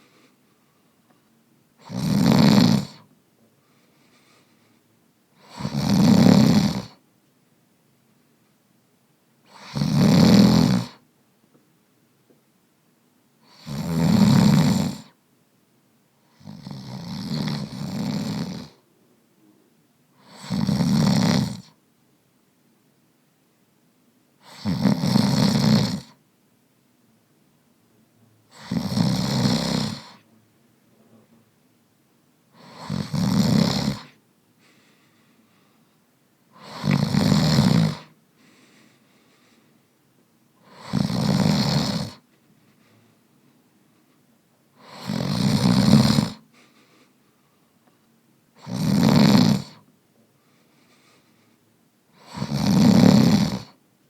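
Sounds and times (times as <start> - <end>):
man snoring: 1.8 - 3.1, 5.4 - 7.0, 9.5 - 11.0, 13.4 - 15.2, 16.3 - 18.8, 20.2 - 21.7, 24.4 - 26.2, 28.5 - 30.2, 32.5 - 34.2, 36.5 - 38.2, 40.6 - 42.2, 44.8 - 46.4, 48.6 - 49.8, 52.1 - 53.8.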